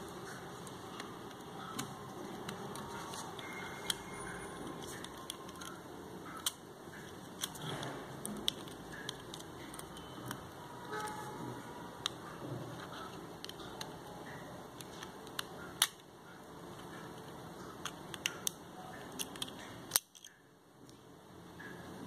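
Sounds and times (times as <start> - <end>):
small plastic parts clicking: 0.6 - 10.5, 12.0 - 14.1, 14.7 - 16.1, 16.7 - 21.0.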